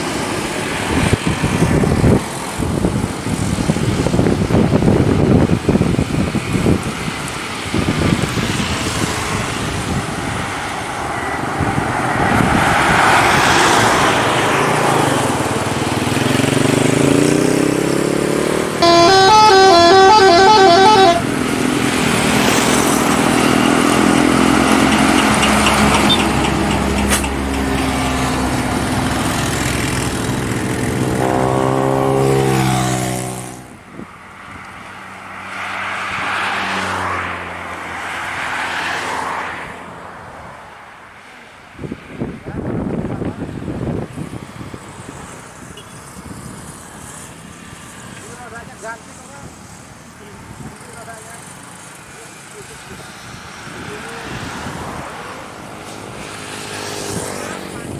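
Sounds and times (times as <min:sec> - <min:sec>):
bus and traffic engine noise: 0:00.0 - 0:57.9
multi-tone musical bus horn: 0:18.8 - 0:21.7, 0:31.1 - 0:32.4
rising tone: 0:18.8 - 0:21.7.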